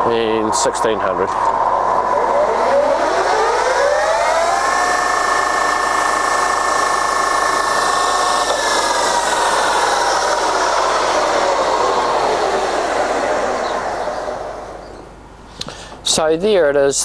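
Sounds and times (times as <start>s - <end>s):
lathe mechanical whine: 0.0s - 16.2s.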